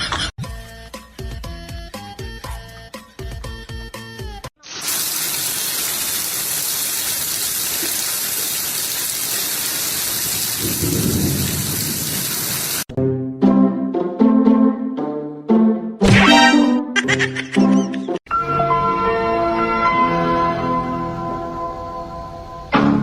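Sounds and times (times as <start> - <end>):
background music: 12.9 - 23.0.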